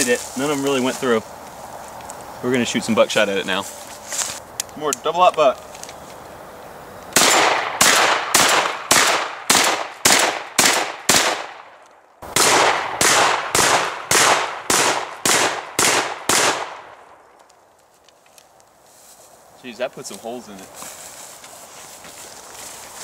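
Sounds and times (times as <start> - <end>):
shotgun firing rapidly: 7.2 - 11.6, 12.3 - 16.8.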